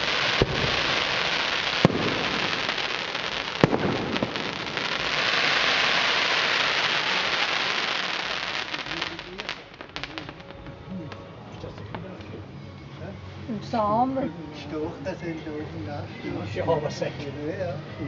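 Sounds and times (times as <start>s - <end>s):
fireworks sharp bangs: 0.0s - 11.2s
fireworks crackling: 0.0s - 12.7s.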